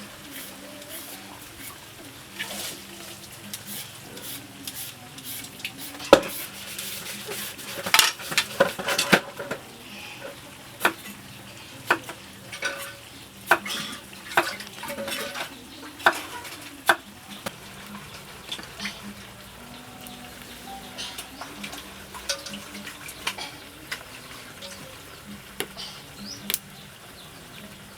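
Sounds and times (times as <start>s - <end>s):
food sizzling: 0.0s - 27.9s
metal utensil clinking in pot: 5.8s - 11.2s, 11.8s - 26.6s.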